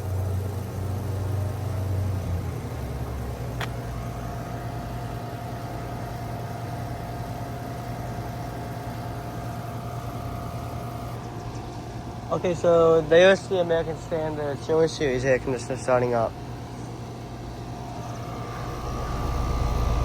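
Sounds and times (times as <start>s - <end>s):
air conditioner low hum: 0.0s - 20.0s
air conditioner steady whine: 0.0s - 20.0s
air conditioner click: 3.4s - 4.1s.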